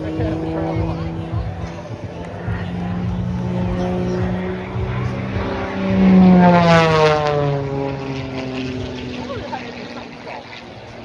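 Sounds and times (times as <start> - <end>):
propeller plane flying past: 0.0 - 11.0.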